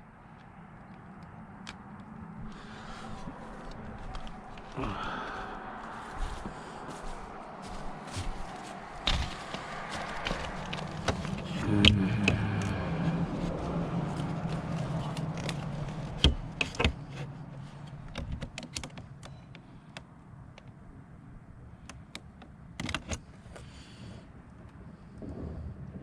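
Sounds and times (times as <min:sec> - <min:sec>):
low steady hum: 0:00.0 - 0:18.4.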